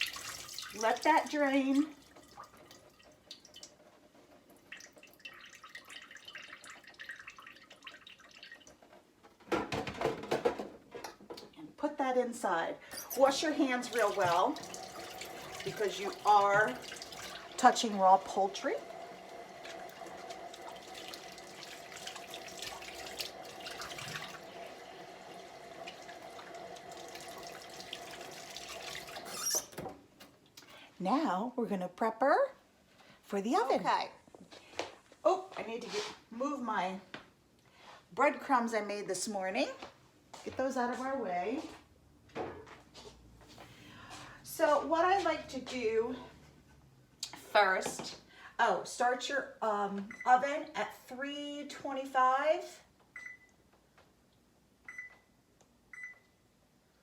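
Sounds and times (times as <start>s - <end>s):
faucet running into sink: 0.0s - 3.8s, 4.5s - 8.8s, 13.0s - 29.8s
faint water dripping: 0.0s - 8.9s, 13.2s - 17.8s.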